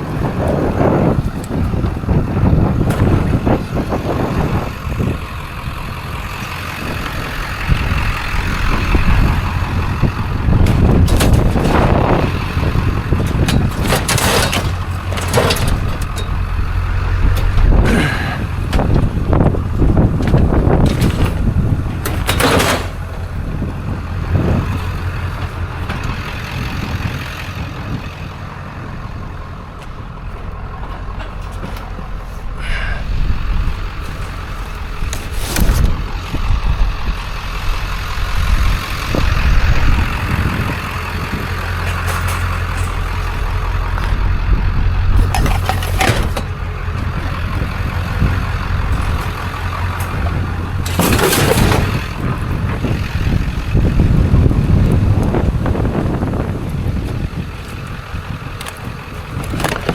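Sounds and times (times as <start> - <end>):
truck engine and road rumble: 0.0 - 59.9
knocks and clatters: 1.2 - 3.8, 7.0 - 27.6, 29.8 - 32.4, 40.0 - 44.2, 45.1 - 53.6, 58.5 - 59.9.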